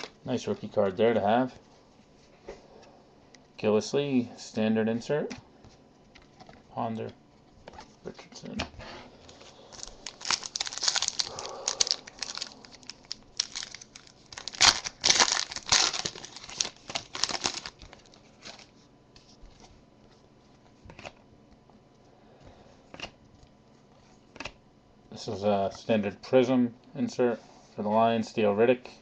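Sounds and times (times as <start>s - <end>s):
card packaging crinkling: 9.3s - 18.8s.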